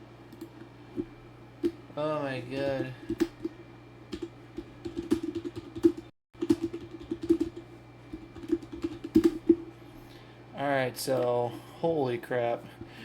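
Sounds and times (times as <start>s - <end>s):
steady low hum: 0.0s - 13.0s
keyboard typing clicks: 4.1s - 9.6s.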